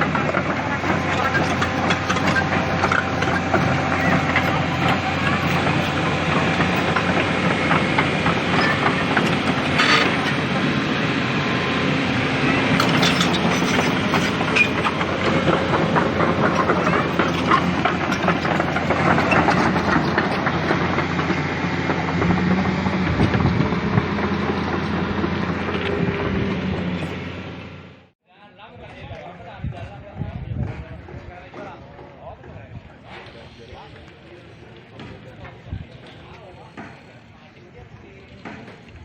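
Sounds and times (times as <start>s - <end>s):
clanking and rattling: 0.0s - 27.3s
heavy machinery engine rumble: 0.0s - 28.2s, 29.7s - 39.0s.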